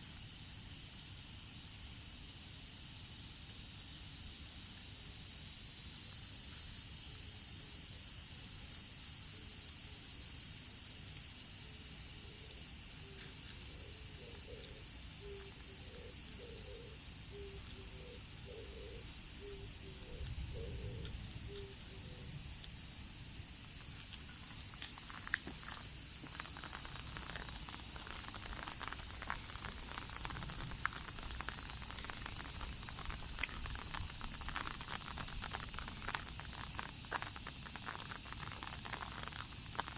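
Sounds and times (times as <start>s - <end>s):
water drips ticking: 23.8s - 39.9s
rain falling: 24.4s - 39.9s.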